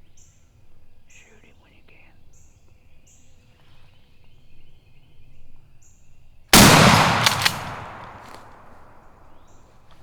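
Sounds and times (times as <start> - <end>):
shotgun blast: 6.6 - 9.0.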